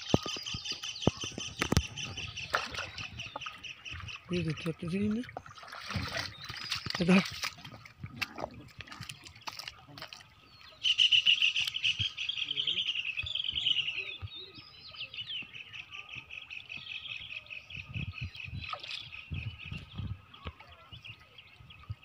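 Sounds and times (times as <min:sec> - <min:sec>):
bird chirping trill: 0:00.0 - 0:05.6, 0:10.5 - 0:20.0.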